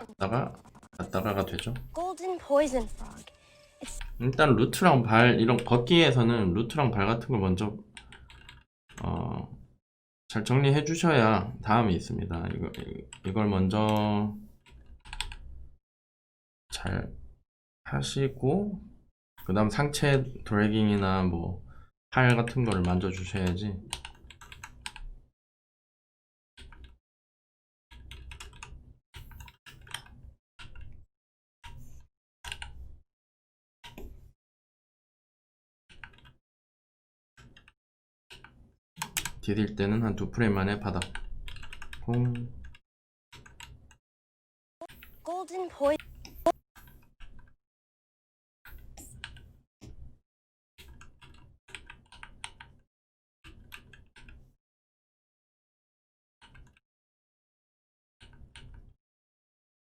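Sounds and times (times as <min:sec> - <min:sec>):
keyboard and mouse clicks: 0:27.9 - 0:31.0, 0:31.6 - 0:32.8, 0:35.9 - 0:36.4, 0:37.4 - 0:39.4.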